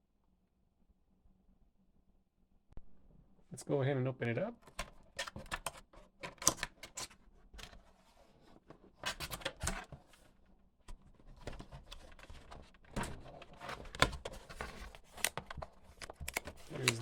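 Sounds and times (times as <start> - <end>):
cardboard box being opened: 10.9 - 17.0.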